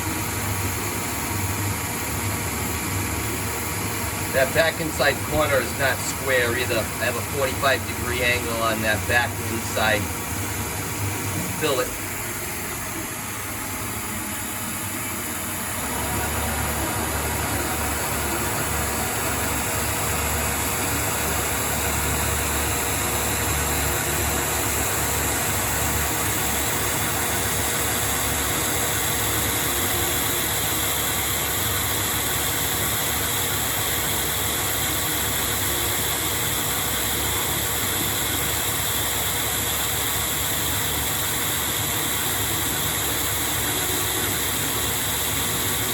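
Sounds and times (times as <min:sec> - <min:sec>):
lathe cutting steel: 0:04.3 - 0:12.9, 0:15.4 - 0:45.9.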